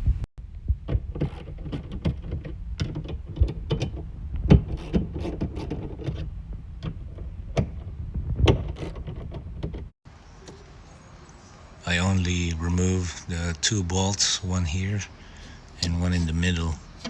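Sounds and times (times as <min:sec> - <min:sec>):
steady low rumble: 0:00.0 - 0:00.9, 0:02.5 - 0:04.7.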